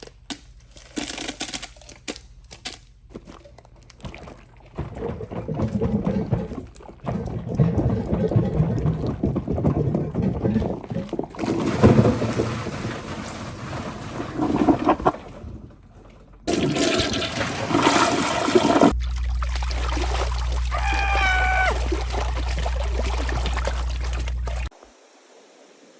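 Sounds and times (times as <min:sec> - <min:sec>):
toilet flushing: 0:04.8 - 0:15.8, 0:16.4 - 0:24.7
low hum: 0:18.0 - 0:24.7.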